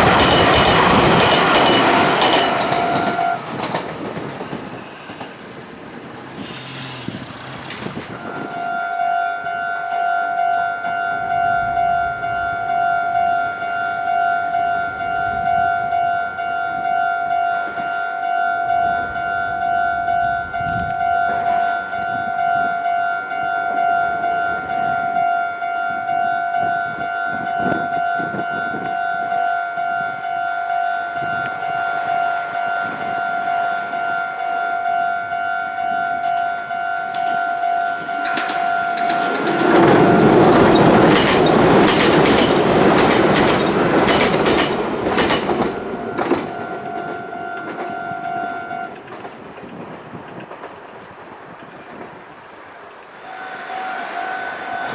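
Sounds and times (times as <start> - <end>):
passing train: 0.0 - 54.9.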